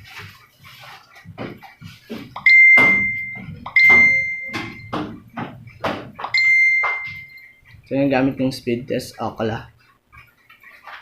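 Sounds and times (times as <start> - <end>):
sharp clicks and knocks: 1.1 - 7.5
loud high electronic beeps: 2.4 - 5.0, 6.4 - 7.6.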